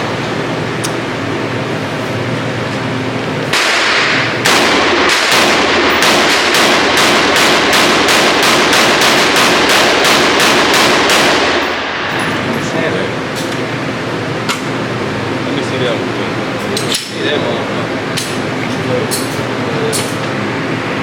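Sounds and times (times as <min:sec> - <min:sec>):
rapid gunfire with echo: 0:03.5 - 0:12.0.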